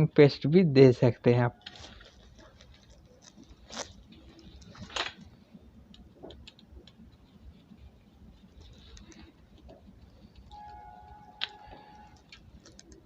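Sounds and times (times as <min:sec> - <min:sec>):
small parts clicking and scraping: 0:01.6 - 0:07.0, 0:08.4 - 0:13.0.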